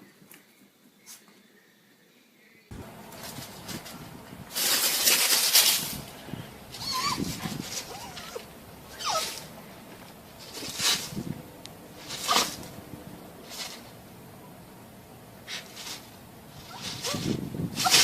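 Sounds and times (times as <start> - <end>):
loud rustling: 2.7 - 18.0
puppy whimpering: 6.7 - 9.5, 16.6 - 18.0.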